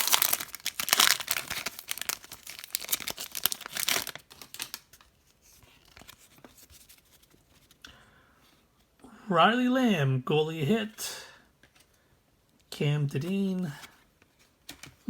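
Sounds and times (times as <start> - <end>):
foil wrapper tearing and crinkling: 0.0 - 5.1.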